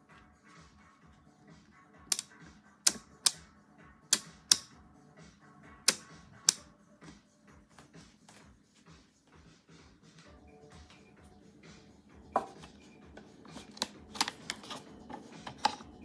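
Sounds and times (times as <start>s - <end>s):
faint background music: 0.0s - 16.0s
sharp hard clicks: 2.9s - 3.4s, 4.2s - 4.7s, 5.9s - 6.6s.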